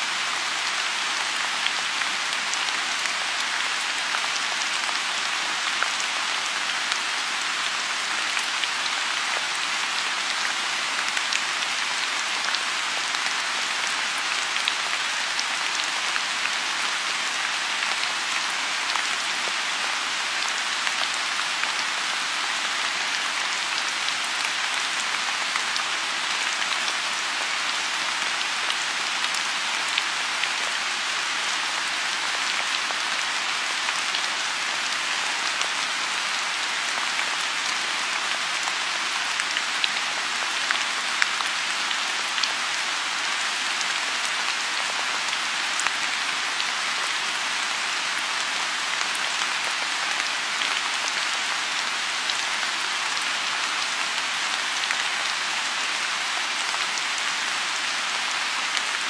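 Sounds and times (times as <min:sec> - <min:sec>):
rain falling on a pond: 0:00.0 - 0:59.0.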